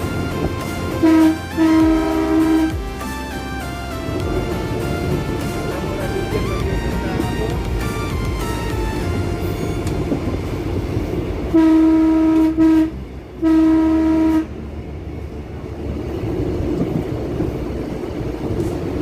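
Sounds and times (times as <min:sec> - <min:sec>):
train horn blasts: 0:00.0 - 0:03.0, 0:11.5 - 0:14.6
moving train rumble: 0:00.0 - 0:19.0.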